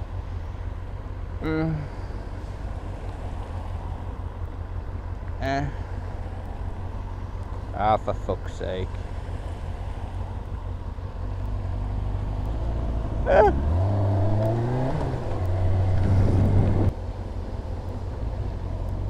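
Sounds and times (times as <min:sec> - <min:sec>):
motorcycle engine revving: 0:11.4 - 0:16.9.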